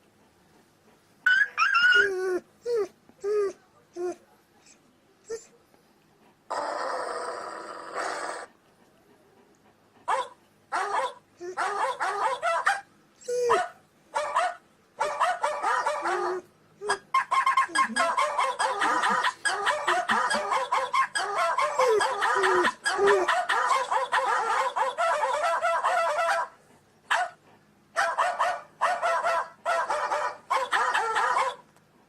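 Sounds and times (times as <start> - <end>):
dog barking: 10.1 - 12.9, 13.5 - 27.4, 28.0 - 31.6.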